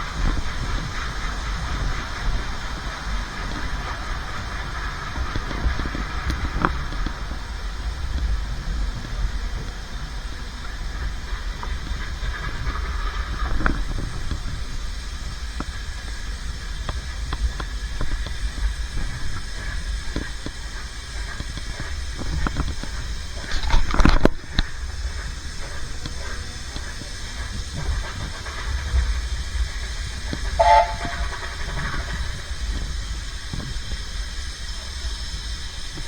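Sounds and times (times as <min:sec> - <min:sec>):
steam train rumbling: 0:00.0 - 0:36.0
wheels clicking on track: 0:00.0 - 0:36.0
brief pitched sound: 0:30.6 - 0:31.5.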